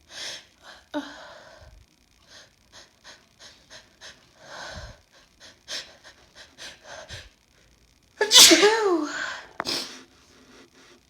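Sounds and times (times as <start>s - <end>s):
woman gasping in-breath: 4.5s - 5.0s.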